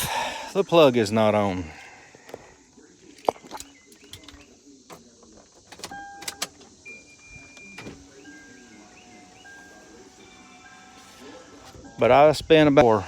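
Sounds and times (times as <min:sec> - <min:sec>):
power window motor: 0:08.0 - 0:11.9.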